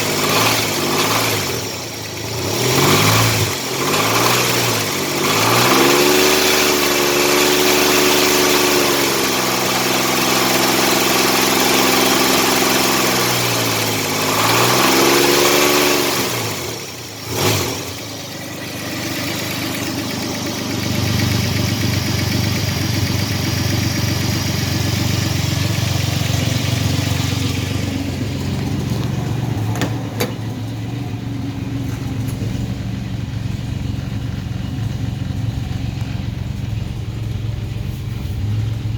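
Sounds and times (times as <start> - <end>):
car engine revving and idling: 0.0 - 38.9
engine knocking: 0.0 - 38.9.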